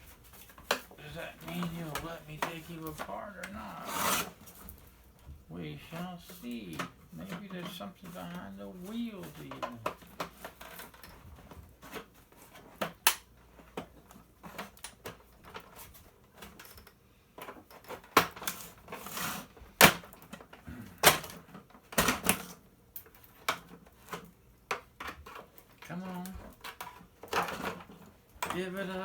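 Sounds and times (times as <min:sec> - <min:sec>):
clicks and knocks of parts: 0:08.8 - 0:19.1, 0:19.7 - 0:28.8.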